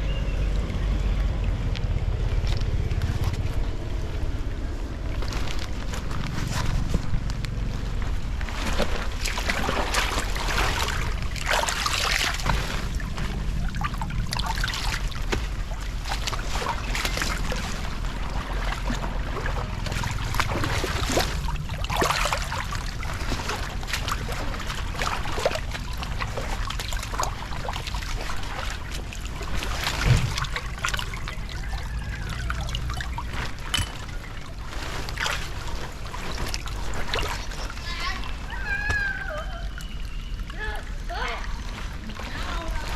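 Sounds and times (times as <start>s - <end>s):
steady low rumble: 0.0s - 42.9s
water rushing and splashing: 0.0s - 42.9s.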